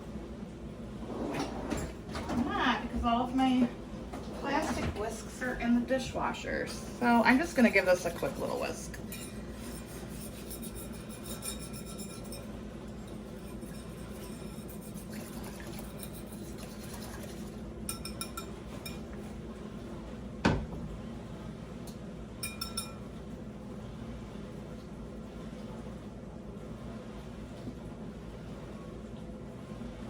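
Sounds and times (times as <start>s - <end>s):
whisk clinking against bowl: 7.4s - 19.1s, 22.4s - 23.1s.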